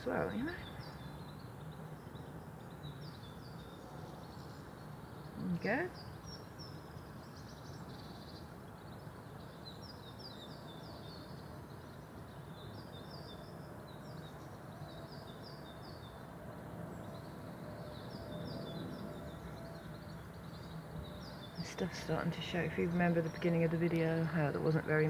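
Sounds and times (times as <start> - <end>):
songbirds chirping: 0.0 - 25.0
low background hum: 18.7 - 25.0.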